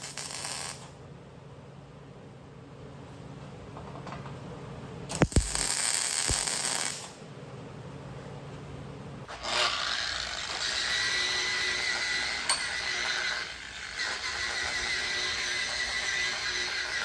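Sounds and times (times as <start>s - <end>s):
angle grinder cutting steel: 9.4s - 17.0s.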